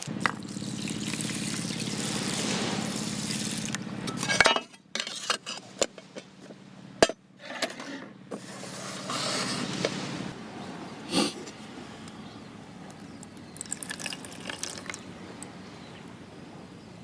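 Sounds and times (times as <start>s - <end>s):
water pouring: 0.2s - 3.8s, 13.5s - 15.0s
running water hiss: 0.4s - 3.8s
cookware and utensils clinking: 4.1s - 5.6s.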